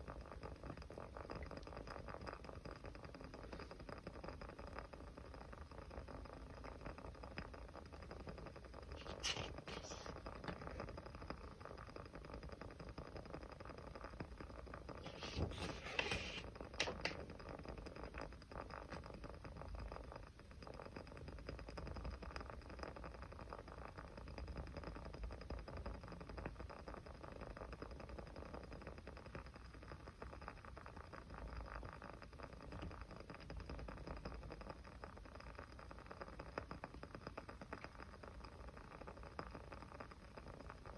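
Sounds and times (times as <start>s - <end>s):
fire pops: 15.0s - 17.7s.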